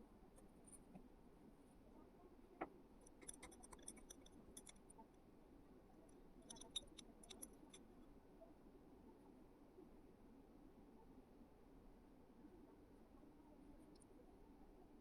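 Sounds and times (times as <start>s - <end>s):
faint light clicks and ticks: 2.6s - 5.0s, 6.1s - 7.9s.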